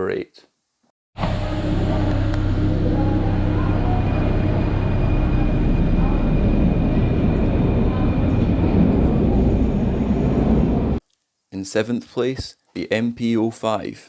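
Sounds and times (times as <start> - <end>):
faint high whine: 1.2 - 11.0
train rumbling: 1.2 - 11.0.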